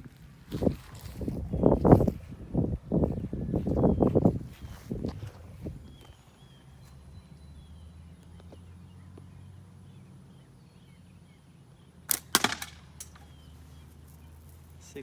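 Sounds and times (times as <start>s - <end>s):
faint bird chirps: 3.0s - 12.1s
shot cracking against can: 12.1s - 13.2s.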